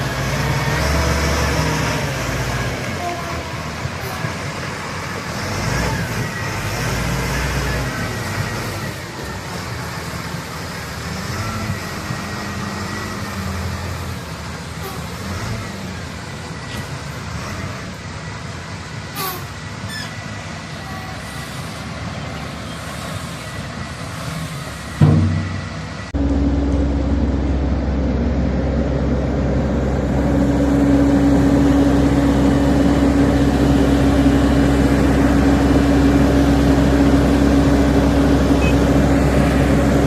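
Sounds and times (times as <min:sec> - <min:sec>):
heavy diesel engine running: 0:00.0 - 0:40.0
sharp metallic knocks: 0:25.0 - 0:26.8.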